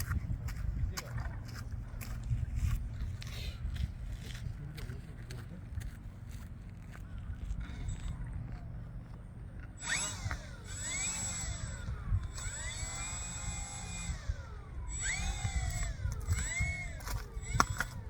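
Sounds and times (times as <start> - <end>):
wind buffeting microphone: 0.0 - 18.0
electric motors whining: 7.2 - 18.0.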